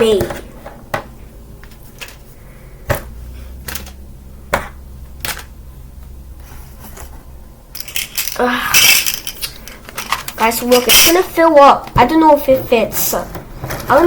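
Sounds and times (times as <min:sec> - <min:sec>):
toys clattering into bin: 0:07.8 - 0:11.2.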